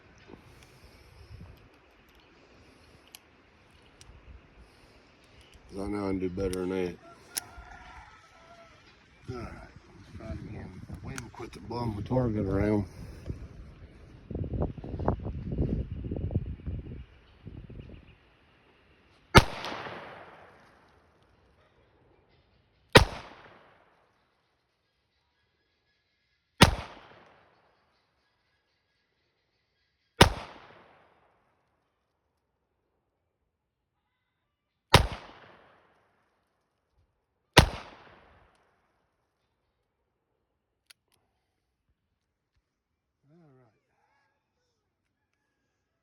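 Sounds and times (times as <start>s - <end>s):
revolver shots echoing: 34.9s - 35.6s, 37.6s - 38.2s.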